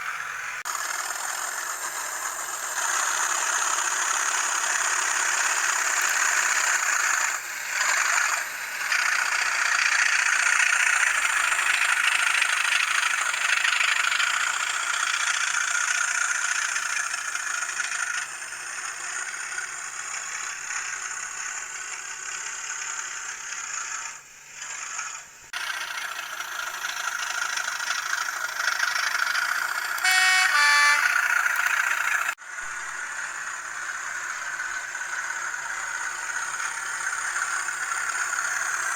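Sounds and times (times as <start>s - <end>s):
tinny diesel engine sound: 0.0s - 38.9s
model train horn: 29.9s - 32.4s.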